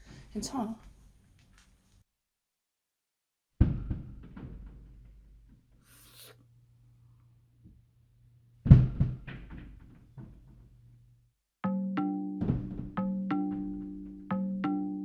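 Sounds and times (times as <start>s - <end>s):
thumping from ceiling: 3.6s - 5.9s, 8.6s - 10.8s, 12.4s - 14.0s.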